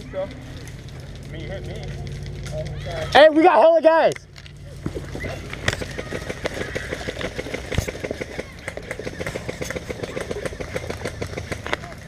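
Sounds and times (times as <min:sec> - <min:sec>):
airsoft guns firing: 0:04.7 - 0:12.0.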